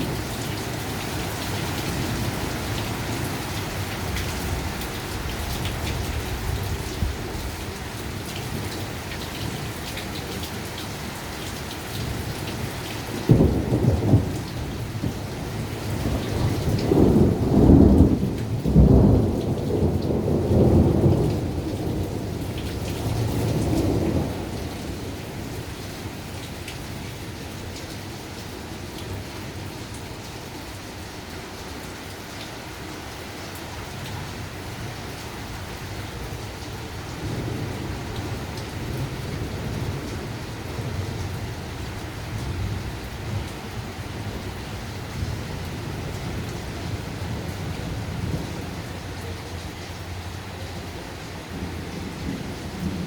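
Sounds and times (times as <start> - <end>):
heavy rain: 0.0 - 53.0
thunderclap and rolling thunder: 13.0 - 25.6, 36.9 - 49.4, 51.4 - 53.0.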